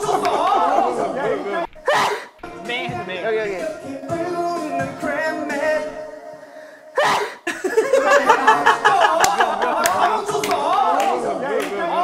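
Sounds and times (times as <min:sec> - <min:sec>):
people shouting: 0:00.0 - 0:02.3, 0:08.0 - 0:12.0
people laughing: 0:00.0 - 0:02.4, 0:07.0 - 0:12.0
music: 0:00.0 - 0:12.0.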